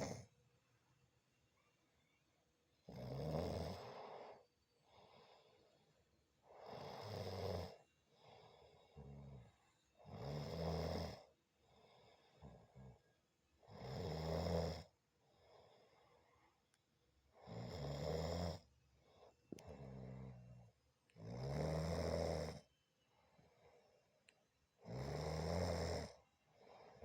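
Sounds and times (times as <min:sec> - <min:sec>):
woman snoring: 0:00.0 - 0:00.2, 0:02.9 - 0:05.5, 0:06.5 - 0:11.3, 0:13.7 - 0:14.9, 0:17.4 - 0:18.7, 0:19.6 - 0:20.6, 0:21.2 - 0:22.6, 0:24.8 - 0:26.2.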